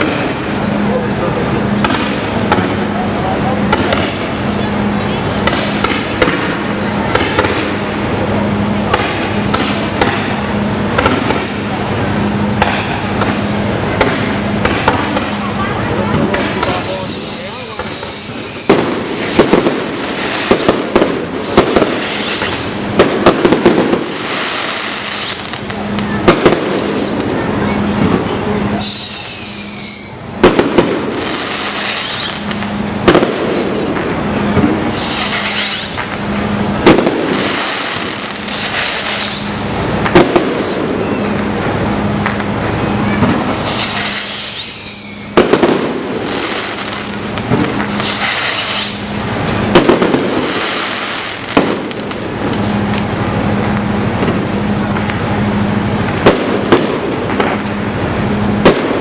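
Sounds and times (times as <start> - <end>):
firework bangs: 0.0 - 59.0
firework crackle: 0.0 - 59.0
falling firework whistle: 4.5 - 7.8, 16.4 - 27.1, 28.3 - 33.7, 34.5 - 41.5, 42.8 - 51.8.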